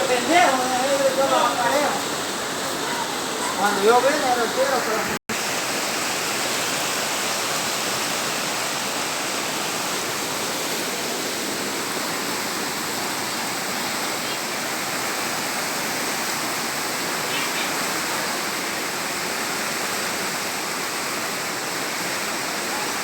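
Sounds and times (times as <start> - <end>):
river floodwater rushing: 0.0 - 23.0.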